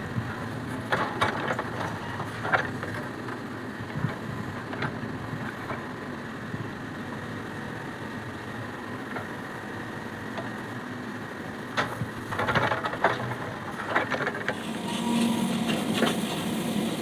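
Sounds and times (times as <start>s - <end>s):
diesel engine running: 14.5s - 17.0s.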